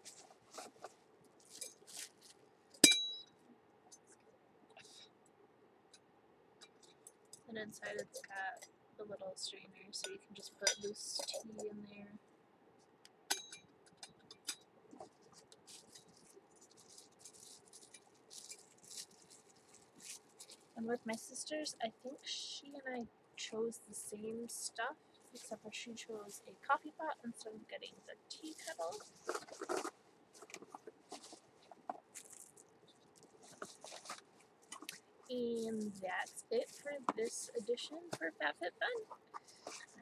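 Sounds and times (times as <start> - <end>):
soft scratchy rustling: 0.0 - 2.6, 7.6 - 8.6, 14.9 - 22.8, 24.0 - 40.0.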